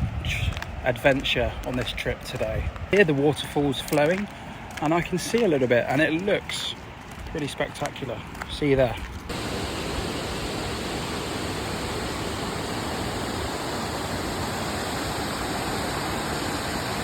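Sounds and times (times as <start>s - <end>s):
waterfall rushing: 9.3s - 17.0s.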